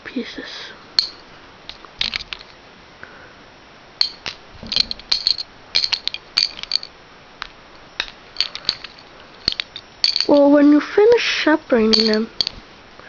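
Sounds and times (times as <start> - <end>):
plastic pieces clicking: 1.7 - 2.6, 4.0 - 6.9, 8.0 - 10.6, 11.9 - 12.6.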